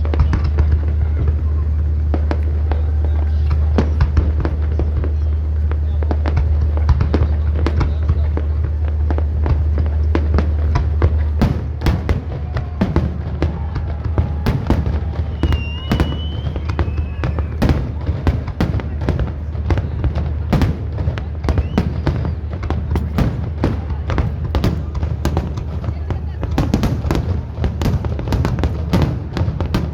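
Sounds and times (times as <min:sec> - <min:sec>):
fireworks bangs and crackles: 0:00.0 - 0:29.9
firework whistle: 0:11.9 - 0:18.0, 0:21.4 - 0:22.5.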